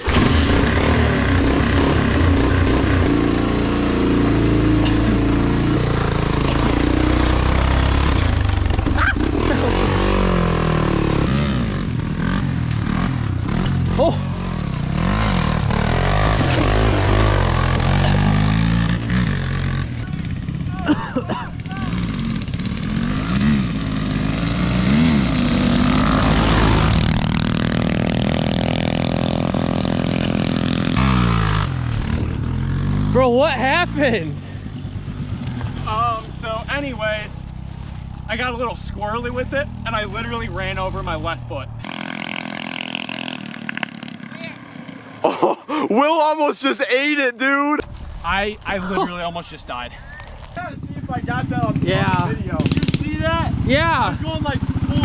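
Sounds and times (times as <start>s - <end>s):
small engine revving: 0.0s - 20.8s, 21.6s - 38.1s, 41.8s - 44.6s.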